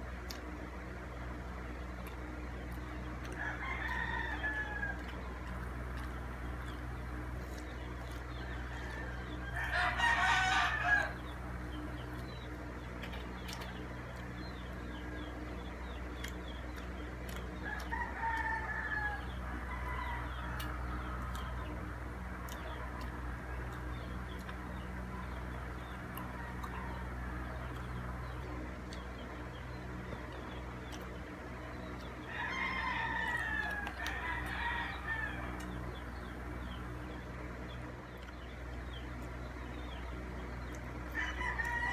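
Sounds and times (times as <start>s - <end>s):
roosters crowing: 3.0s - 12.8s, 17.4s - 28.6s, 32.0s - 37.4s, 41.0s - 41.9s.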